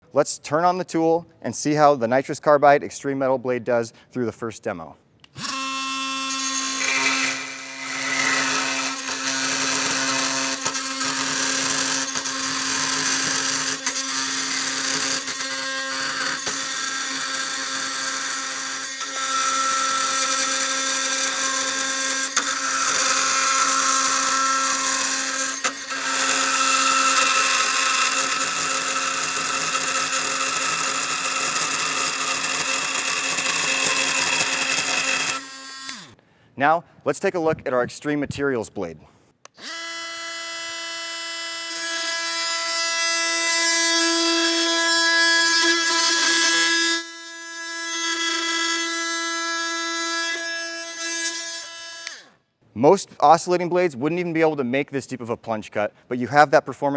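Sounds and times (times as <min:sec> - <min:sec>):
oscillating multi-tool cutting metal: 0:05.3 - 0:36.2, 0:39.5 - 0:52.4.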